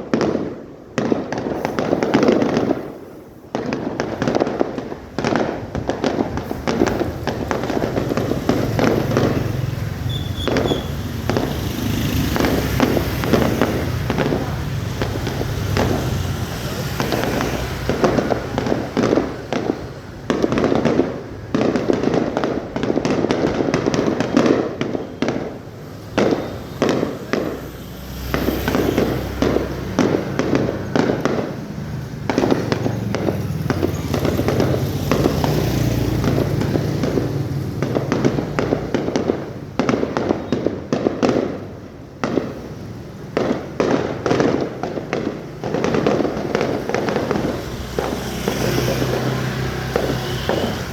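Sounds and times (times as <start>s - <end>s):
fireworks bangs and crackles: 0.0s - 50.9s
heavy booms: 5.0s - 41.2s.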